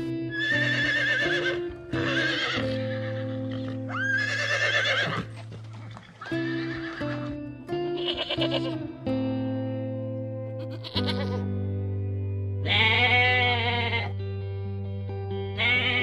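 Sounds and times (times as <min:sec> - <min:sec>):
background guitar music: 0:00.0 - 0:16.0
horse whinnying: 0:00.3 - 0:07.3, 0:15.6 - 0:16.0.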